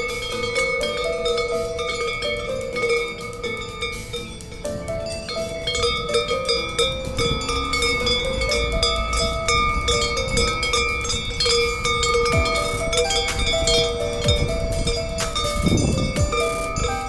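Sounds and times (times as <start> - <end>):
cowbells clanking: 0.0 - 17.0
low rumble: 3.8 - 17.0.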